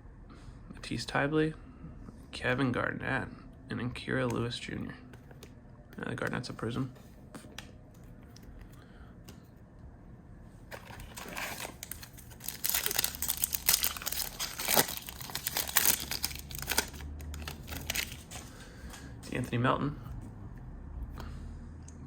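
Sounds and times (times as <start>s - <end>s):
foil wrapper crinkling and tearing: 10.7s - 18.6s.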